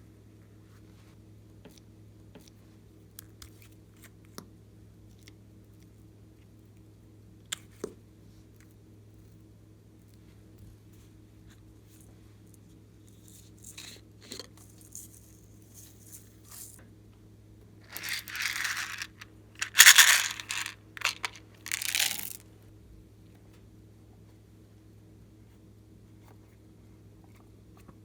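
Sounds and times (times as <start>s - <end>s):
crinkly rustling: 17.9s - 22.4s.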